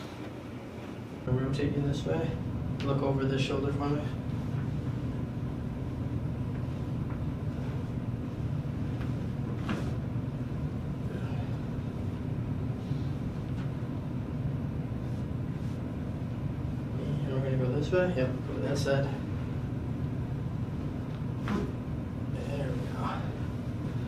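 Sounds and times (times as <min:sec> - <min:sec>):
low room hum: 0:00.0 - 0:24.0.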